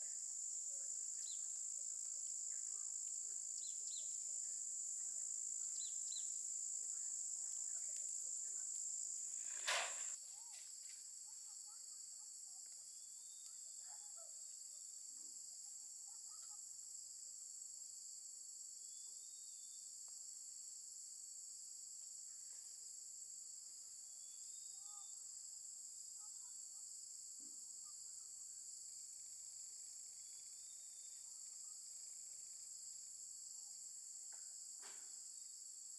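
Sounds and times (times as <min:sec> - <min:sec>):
insect chorus drone: 0:00.0 - 0:35.9
sharp knock: 0:09.5 - 0:10.2.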